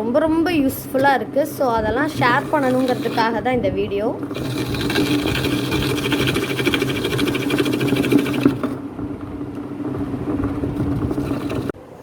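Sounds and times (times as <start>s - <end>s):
grinder motor hum: 1.8s - 11.8s
coconut grating scrape: 2.0s - 3.4s, 4.3s - 8.8s, 10.7s - 11.8s.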